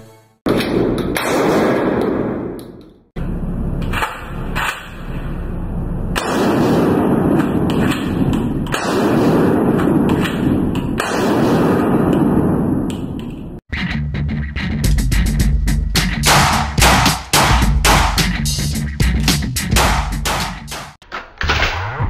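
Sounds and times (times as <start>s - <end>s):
gunshots with rumbling echo: 0.5s - 3.1s, 3.9s - 13.6s, 16.2s - 18.4s, 19.8s - 22.0s.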